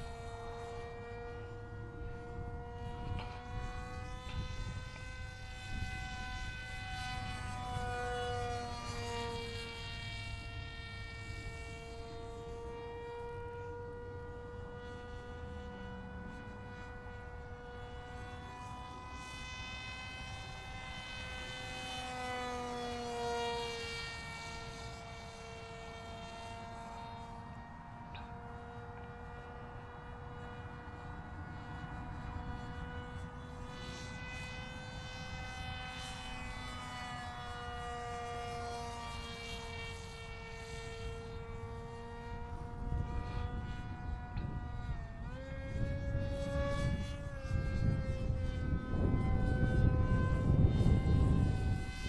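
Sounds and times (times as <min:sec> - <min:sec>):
wind rumble on microphone: 0:00.0 - 0:12.4, 0:28.1 - 0:52.0
model plane electric motor whining: 0:00.0 - 0:52.0.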